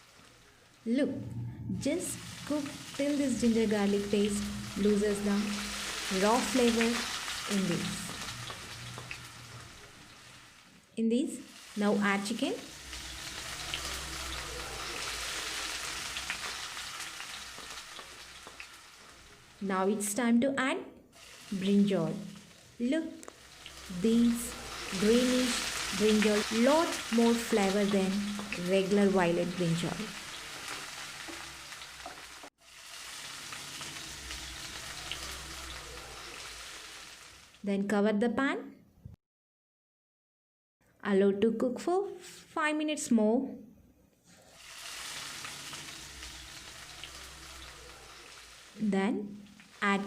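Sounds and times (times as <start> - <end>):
chicken sizzling in oil: 1.9 - 19.6, 21.1 - 37.6, 44.4 - 50.0.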